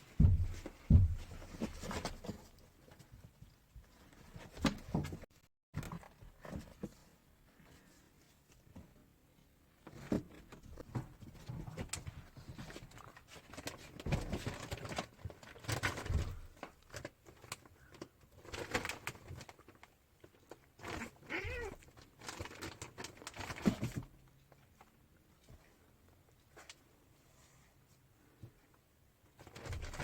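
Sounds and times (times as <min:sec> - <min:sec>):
cats scuffling and spatting: 0:00.0 - 0:30.0
wavering cat cry: 0:21.2 - 0:21.8.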